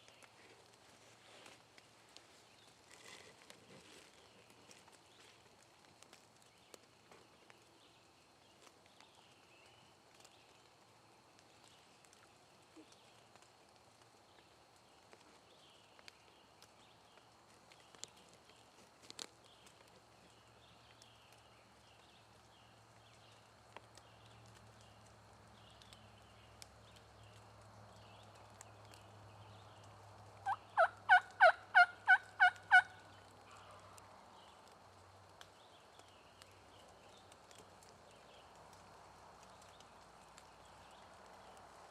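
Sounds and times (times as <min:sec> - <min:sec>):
songbird chirps: 0:00.0 - 0:41.9
turkey gobbling: 0:30.4 - 0:33.0.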